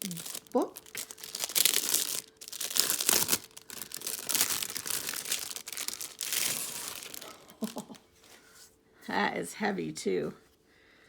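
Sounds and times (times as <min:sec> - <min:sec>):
wrapping crinkling and rustling: 0:00.0 - 0:08.5.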